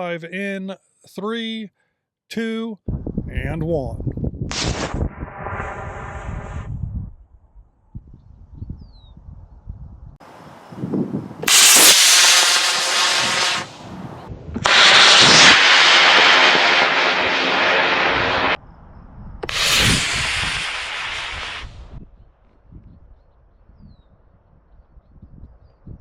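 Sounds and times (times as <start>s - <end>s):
rocket motor hissing rush: 4.5s - 6.7s, 11.4s - 13.9s, 14.6s - 18.6s, 19.4s - 21.8s.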